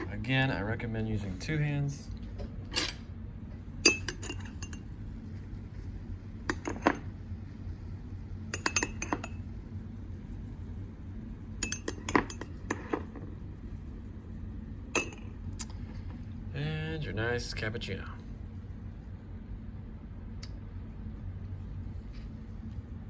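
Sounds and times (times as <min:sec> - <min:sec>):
low steady hum: 0:00.0 - 0:23.0
cup and utensils clinking: 0:03.9 - 0:04.9, 0:06.5 - 0:07.1, 0:08.5 - 0:09.4, 0:11.6 - 0:13.2, 0:14.9 - 0:15.7.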